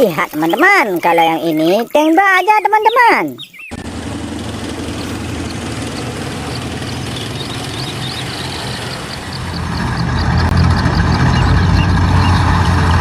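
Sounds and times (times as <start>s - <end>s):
low motor hum: 3.5s - 13.0s.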